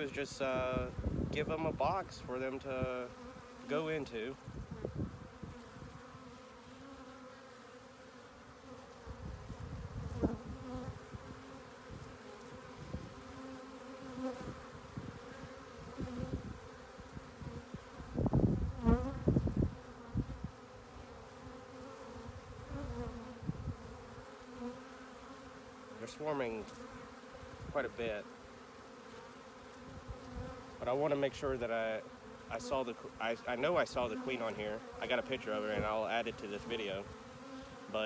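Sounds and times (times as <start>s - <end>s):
bees buzzing: 0.0s - 38.0s.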